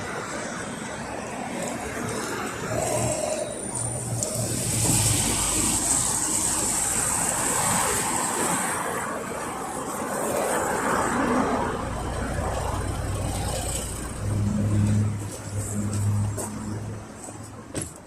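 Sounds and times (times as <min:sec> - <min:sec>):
rushing road noise: 0:00.0 - 0:18.0
bus engine idling hum: 0:11.5 - 0:18.0.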